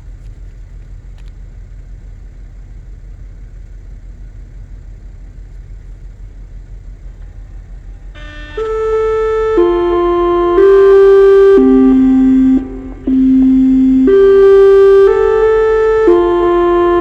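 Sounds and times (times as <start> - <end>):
steady low rumble: 0.0 - 17.0
warning siren electronic tones: 8.0 - 17.0.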